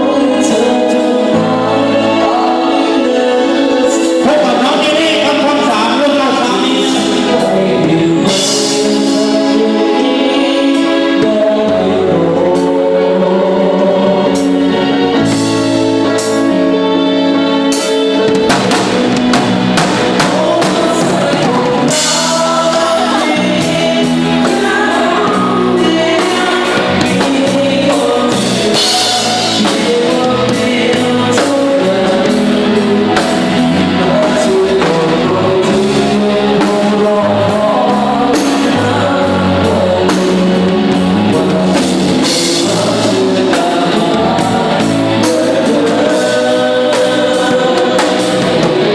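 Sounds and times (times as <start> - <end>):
drum kit: 0.0 - 48.9
live band music: 0.0 - 48.9
person singing: 0.0 - 48.9.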